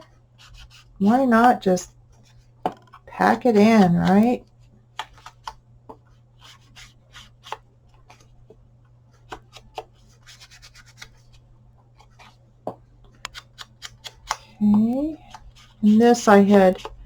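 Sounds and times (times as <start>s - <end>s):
steady low hum: 11.0s - 17.0s.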